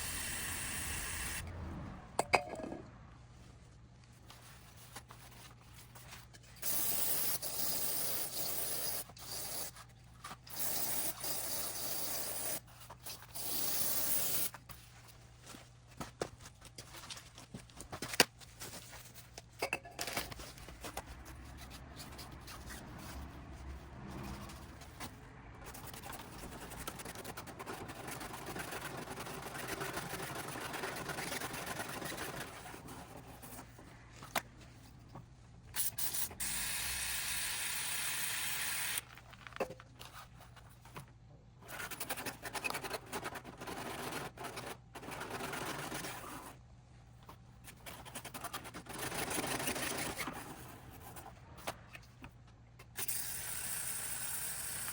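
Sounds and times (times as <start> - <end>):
scraping and rubbing: 20.2 - 35.2.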